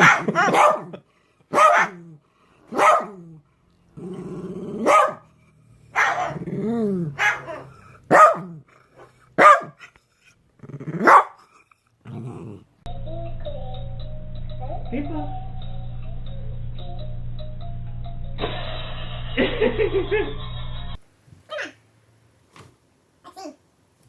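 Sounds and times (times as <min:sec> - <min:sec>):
dog barking: 0:00.0 - 0:02.1, 0:02.7 - 0:03.2, 0:04.8 - 0:05.3, 0:05.9 - 0:06.5, 0:07.1 - 0:09.9, 0:11.0 - 0:11.4
dog growling: 0:03.1 - 0:09.3, 0:10.5 - 0:12.8.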